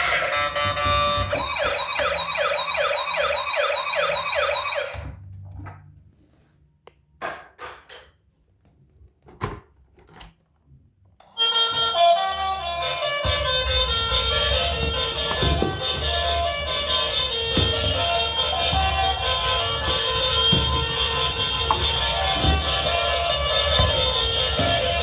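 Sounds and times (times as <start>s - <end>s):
toy electronic siren: 0.0s - 5.1s, 11.3s - 25.0s.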